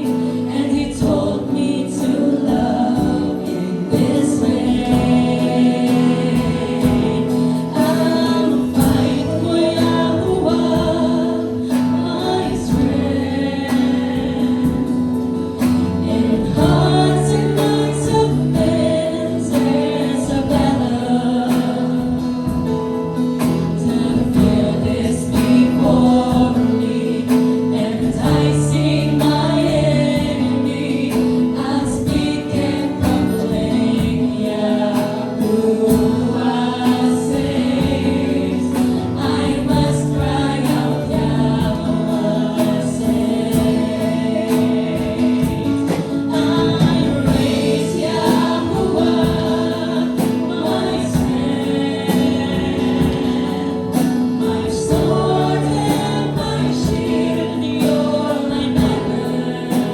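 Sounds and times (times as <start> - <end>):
group singing praise song: 0.0 - 59.9.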